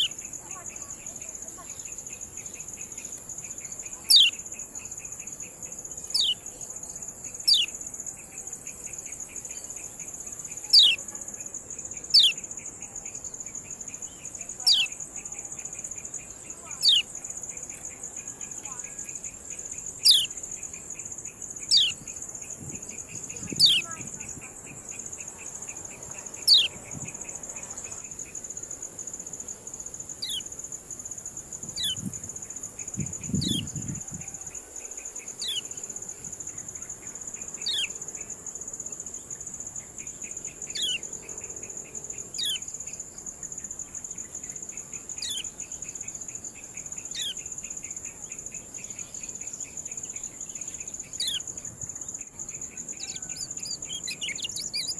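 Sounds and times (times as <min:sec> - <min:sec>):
high-pitched insect hum: 0:00.0 - 0:54.9
fast ticking chirps: 0:52.6 - 0:54.9.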